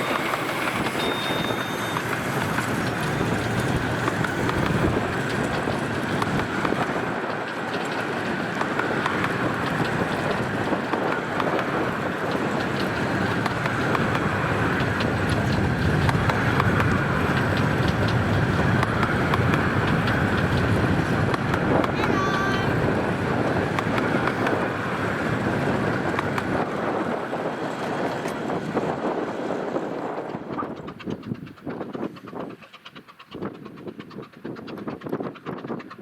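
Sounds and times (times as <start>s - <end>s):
small clicks and rattles: 0.0s - 22.0s
miniature train wheels rumbling: 0.0s - 36.0s.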